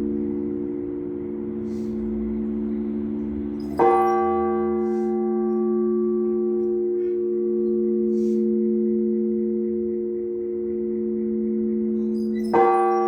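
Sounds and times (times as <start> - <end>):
bell clanging: 0.0 - 8.3
church bells ringing: 0.0 - 13.0.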